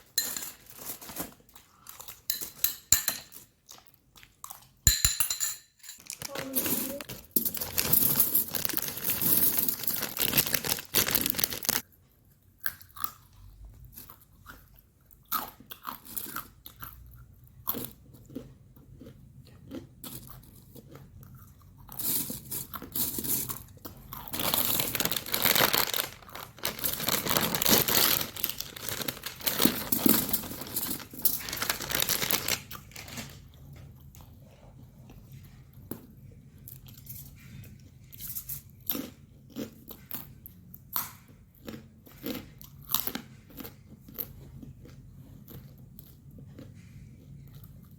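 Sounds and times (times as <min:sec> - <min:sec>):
crunching and chewing snack: 0:00.6 - 0:02.3, 0:06.2 - 0:47.9.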